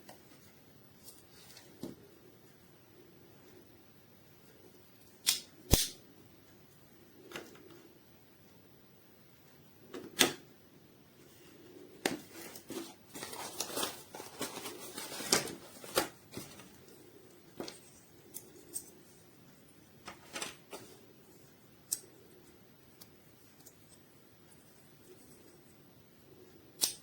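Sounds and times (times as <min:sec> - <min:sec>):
rustling: 0:11.2 - 0:21.5.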